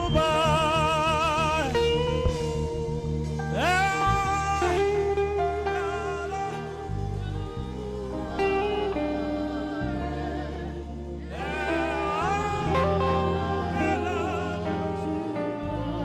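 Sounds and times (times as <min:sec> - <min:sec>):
sustained low backing notes: 0:00.0 - 0:16.0
saxophone melody with vibrato: 0:03.6 - 0:09.9, 0:11.3 - 0:16.0.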